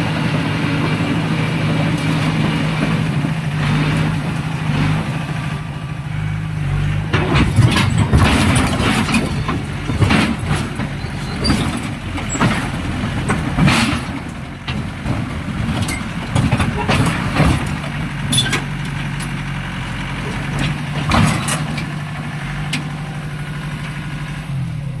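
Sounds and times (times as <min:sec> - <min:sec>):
bulldozer diesel engine running: 0:00.0 - 0:25.0
irregular clanks and knocks: 0:06.9 - 0:19.4, 0:20.3 - 0:22.9.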